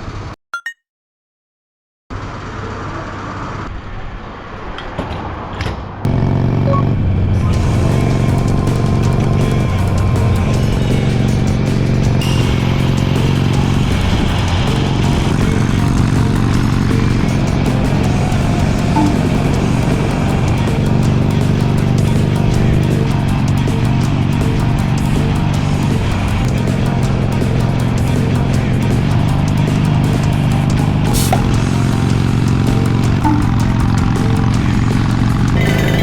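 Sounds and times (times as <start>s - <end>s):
motorcycle engine hum: 6.1s - 36.0s
music playing: 7.5s - 36.0s.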